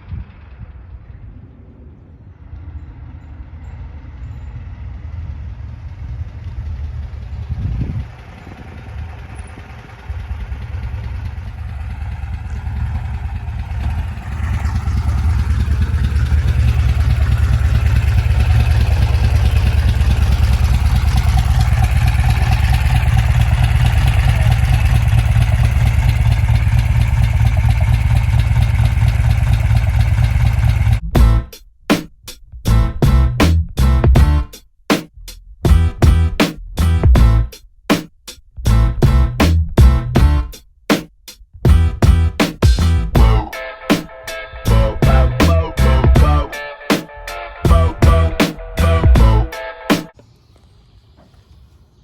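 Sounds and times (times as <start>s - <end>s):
air-cooled engine running: 4.6s - 31.0s.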